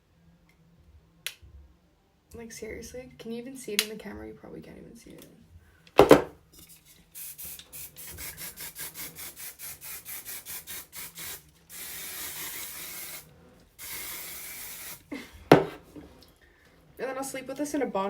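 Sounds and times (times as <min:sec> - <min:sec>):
sharp knock: 0:06.0 - 0:06.4
hairspray hissing: 0:06.1 - 0:15.8.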